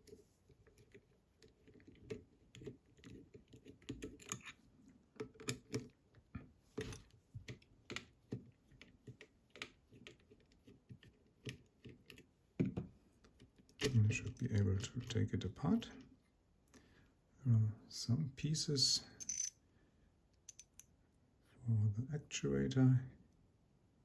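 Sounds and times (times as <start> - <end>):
screwdriver clicking on metal lock parts: 1.8 - 4.6.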